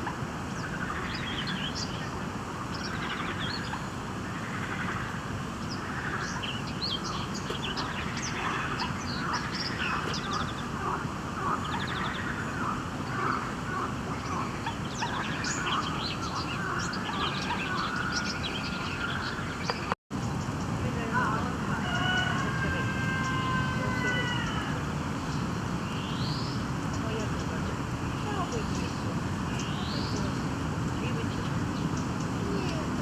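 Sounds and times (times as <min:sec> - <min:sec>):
low background noise: 0:00.0 - 0:33.0
small birds chirping: 0:05.6 - 0:10.7, 0:14.2 - 0:33.0
bird trills: 0:15.0 - 0:33.0.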